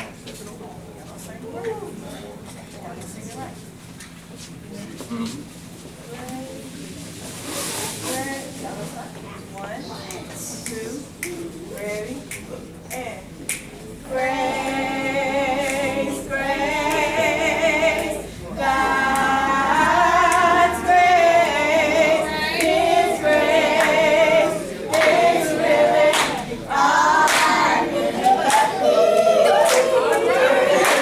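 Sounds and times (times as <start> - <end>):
vocal group singing a cappella: 14.0 - 31.0.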